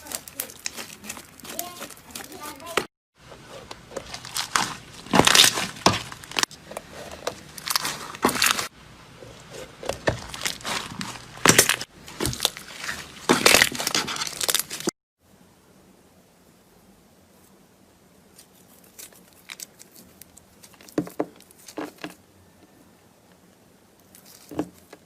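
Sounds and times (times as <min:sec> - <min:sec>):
slime crunching and crackling: 0:00.0 - 0:14.9, 0:18.3 - 0:22.2.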